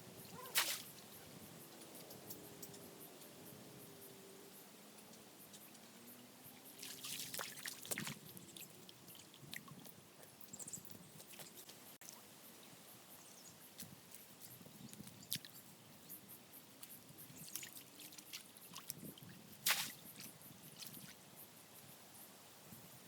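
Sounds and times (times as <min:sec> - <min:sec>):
water splash: 0:00.4 - 0:01.0, 0:06.8 - 0:08.2, 0:19.6 - 0:20.1.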